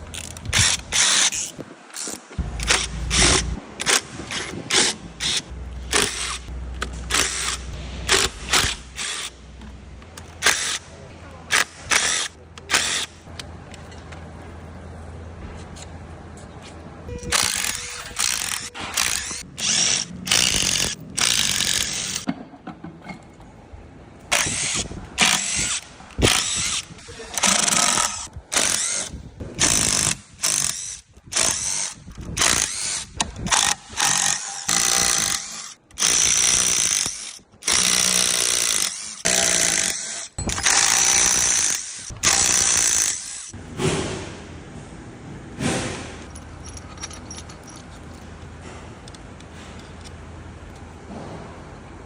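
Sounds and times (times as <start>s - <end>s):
impact wrench bursts with whine: 2.4s - 9.4s, 17.2s - 22.3s, 24.3s - 43.5s.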